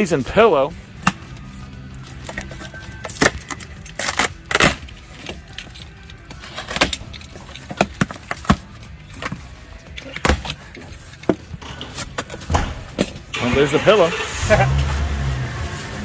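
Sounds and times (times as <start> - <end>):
rummaging through boxes: 0.0 - 13.8.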